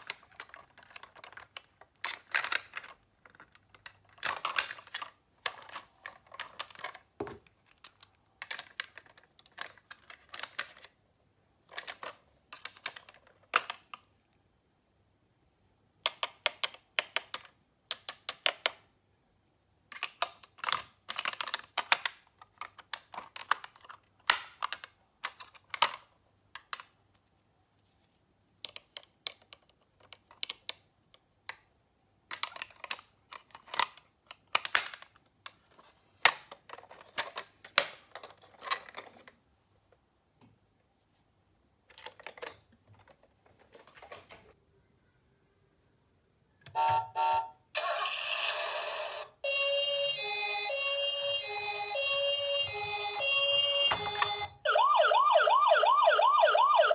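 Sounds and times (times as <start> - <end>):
toy cars clicking and clattering: 0.0 - 11.0, 11.6 - 14.0, 19.9 - 26.9, 32.3 - 39.4.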